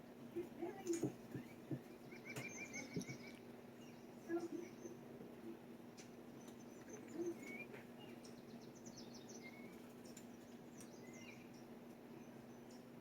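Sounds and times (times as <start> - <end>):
birds chirping: 0.0 - 13.0
steady low hum: 0.0 - 13.0.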